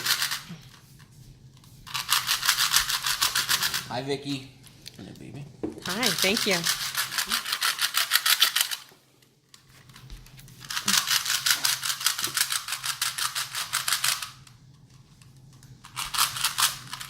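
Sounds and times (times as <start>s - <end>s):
rapid plastic cube clicks: 6.7s - 8.8s.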